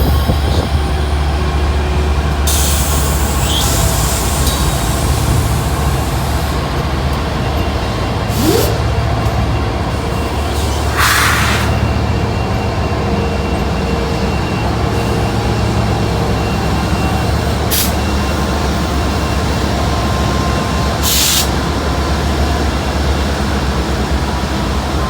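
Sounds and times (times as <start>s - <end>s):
diesel locomotive engines rumbling: 0.0s - 25.0s
compressed air hiss: 2.5s - 6.6s, 8.3s - 8.8s, 10.9s - 11.8s, 21.0s - 21.5s.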